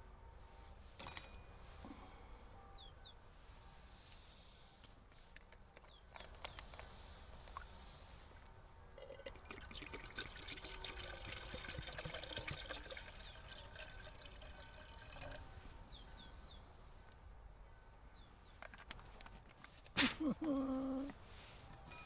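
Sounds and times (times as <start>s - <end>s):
water pouring and splashing: 9.0s - 15.5s.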